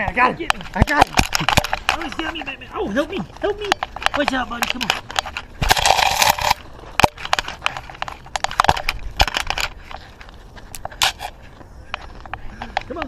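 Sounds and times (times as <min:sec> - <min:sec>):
crunching rustle: 0:00.0 - 0:13.0.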